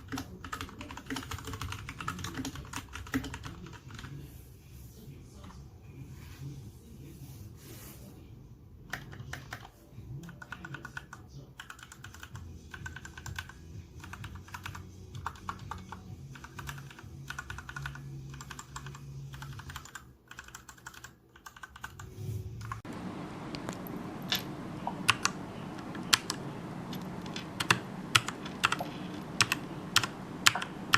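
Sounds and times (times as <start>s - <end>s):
mechanical keyboard typing: 0.0s - 4.1s, 8.9s - 22.0s, 25.1s - 30.9s.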